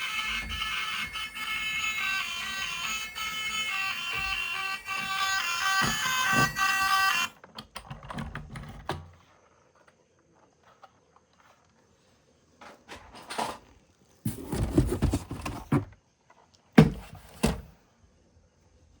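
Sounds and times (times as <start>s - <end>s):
objects rattling and scraping: 14.3s - 15.9s.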